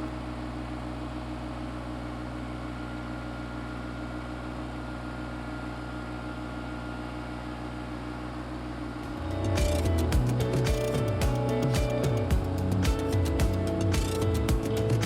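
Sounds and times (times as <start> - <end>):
tractor engine running: 8.8 - 15.0.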